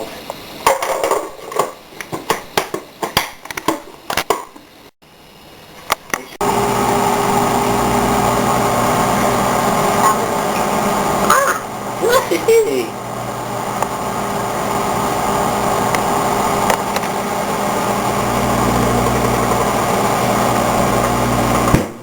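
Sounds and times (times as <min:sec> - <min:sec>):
microwave oven humming: 0:06.4 - 0:22.0.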